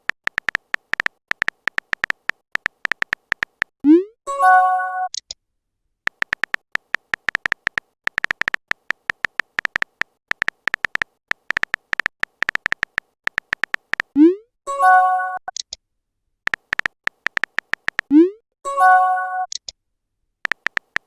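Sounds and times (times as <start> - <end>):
typing clicks: 0.0 - 3.7, 6.1 - 14.2, 15.5 - 15.8, 16.5 - 18.2, 19.2 - 19.8, 20.4 - 21.0
electronic message chime: 18.7 - 19.5.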